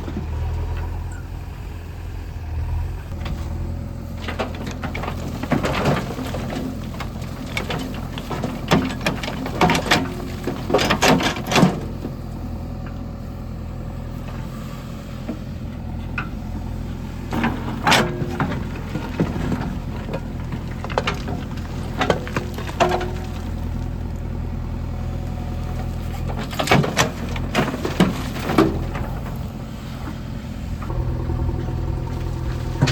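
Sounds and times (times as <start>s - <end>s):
diesel engine running low speed: 0.0s - 32.9s
clanks and knocks: 4.2s - 12.1s, 17.3s - 24.0s, 26.0s - 29.5s.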